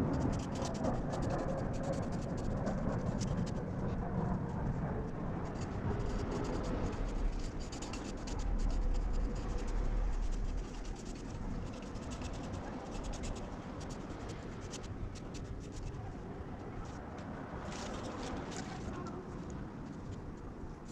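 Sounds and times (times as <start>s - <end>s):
rapid scratching strokes: 0.0s - 3.6s, 5.4s - 16.0s
low rumble: 0.0s - 16.2s.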